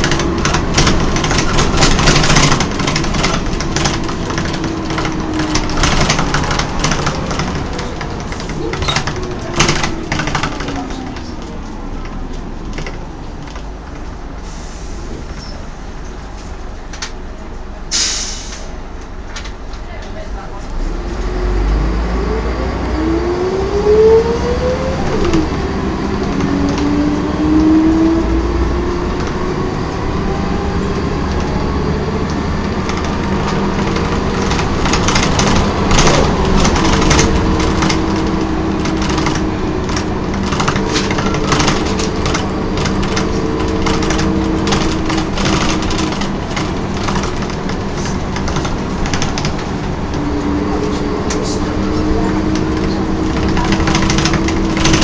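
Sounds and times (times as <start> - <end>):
clicks and rattles: 0.0 - 13.7, 32.9 - 49.8, 52.6 - 55.0
diesel engine drone: 0.0 - 55.0
bus gearbox whining: 52.5 - 55.0.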